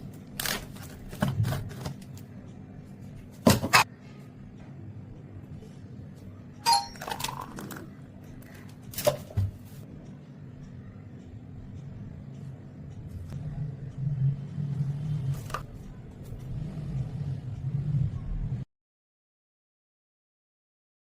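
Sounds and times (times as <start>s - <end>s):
low steady hum: 0.0s - 18.7s
ringing clink of glass or metal: 6.6s - 7.2s
kitchenware knocking: 6.7s - 7.3s.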